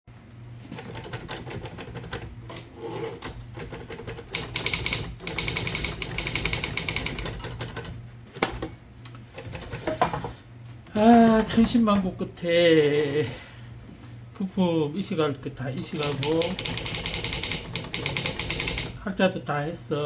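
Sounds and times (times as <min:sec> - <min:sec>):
steady low hum: 0:00.1 - 0:20.0
typewriter keystrokes: 0:03.4 - 0:08.0, 0:15.8 - 0:19.0.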